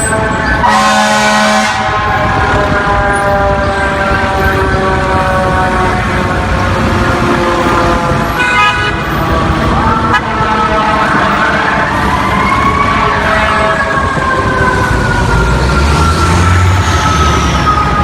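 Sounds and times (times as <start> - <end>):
siren wailing: 0.0 - 18.0
truck engine rumble: 0.0 - 18.0
air horn blasts: 0.6 - 3.7, 7.1 - 9.1.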